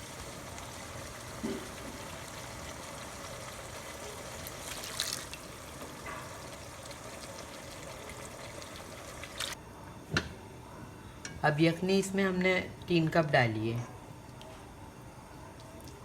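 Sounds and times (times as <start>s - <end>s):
liquid pouring into pot: 0.0s - 9.6s.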